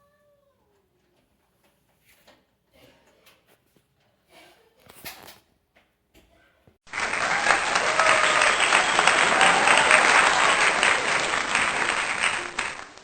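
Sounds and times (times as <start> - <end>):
crowd applause: 6.8 - 13.0.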